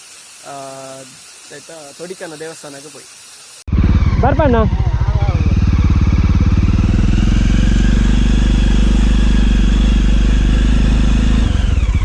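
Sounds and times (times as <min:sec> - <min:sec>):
motorcycle engine running: 0:03.7 - 0:12.0.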